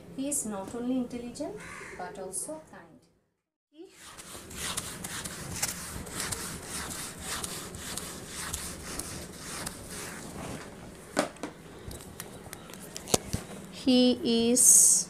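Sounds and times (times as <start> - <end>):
scratchy writing strokes: 3.9 - 10.6.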